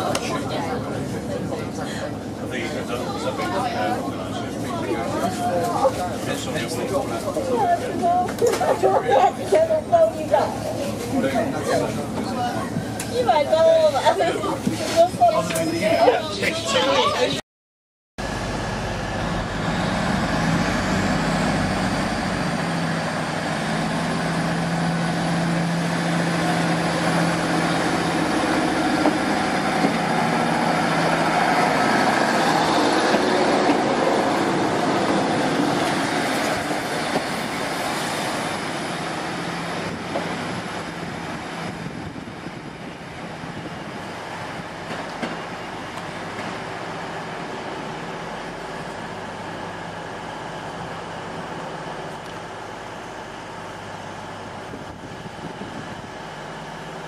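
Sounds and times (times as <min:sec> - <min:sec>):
diesel railcar engine: 0:00.0 - 0:17.4, 0:18.2 - 0:57.0
wheel and rail noise: 0:18.2 - 0:57.0.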